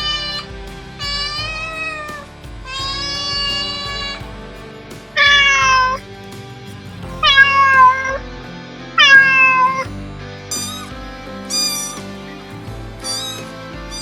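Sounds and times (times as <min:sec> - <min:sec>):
cat meowing: 0:10.6 - 0:10.9, 0:11.5 - 0:12.0, 0:13.0 - 0:14.0.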